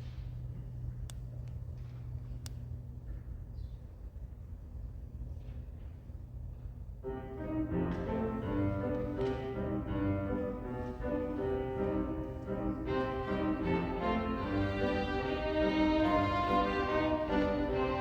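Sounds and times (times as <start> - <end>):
low room hum: 0.0 - 18.0
violins playing bowed notes: 7.4 - 18.0.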